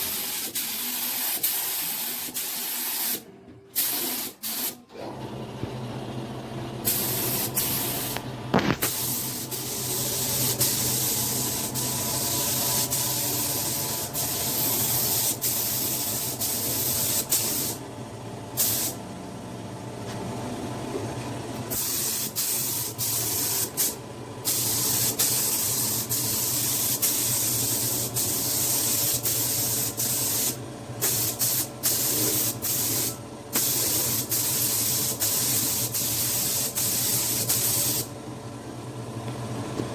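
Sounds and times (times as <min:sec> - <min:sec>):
spray paint hissing: 0:00.0 - 0:03.2, 0:03.8 - 0:04.8, 0:06.9 - 0:17.8, 0:18.6 - 0:19.0, 0:21.7 - 0:38.1
steady low hum: 0:05.7 - 0:39.9.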